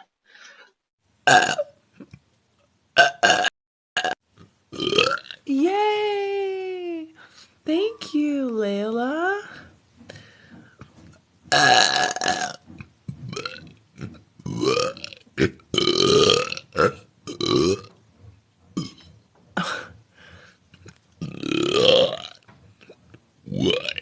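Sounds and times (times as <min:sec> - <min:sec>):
woman burping: 0:01.3 - 0:01.7, 0:04.8 - 0:05.4, 0:18.8 - 0:20.0.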